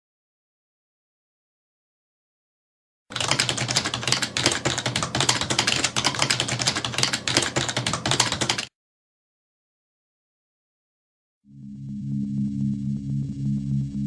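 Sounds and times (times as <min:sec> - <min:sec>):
rapid dense clicking: 0:03.1 - 0:08.7.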